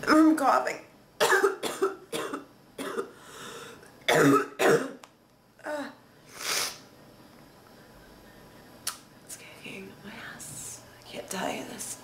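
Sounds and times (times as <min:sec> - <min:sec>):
woman coughing harshly: 0:01.2 - 0:03.2, 0:04.1 - 0:05.0
noisy breath: 0:03.1 - 0:03.9.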